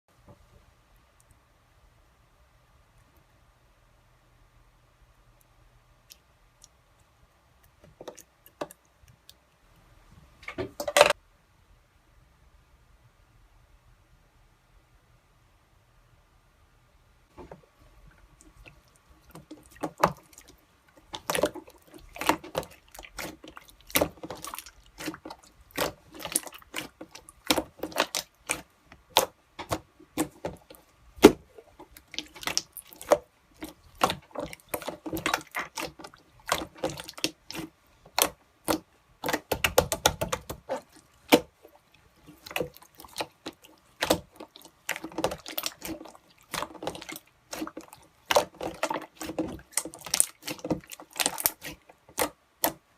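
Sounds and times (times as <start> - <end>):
slime squishing with wet pops: 17.4 - 52.9.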